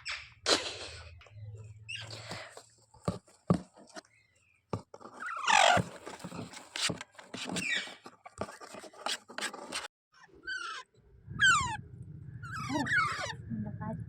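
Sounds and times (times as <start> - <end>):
parrot squawking: 10.2 - 11.8, 12.4 - 13.5.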